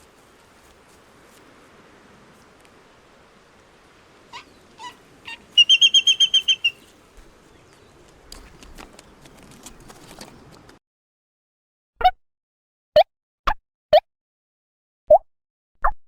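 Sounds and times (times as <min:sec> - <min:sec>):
bird calling: 0:02.2 - 0:10.7
high bird chirps: 0:04.3 - 0:06.9
faint clicks and rustling: 0:06.9 - 0:10.8.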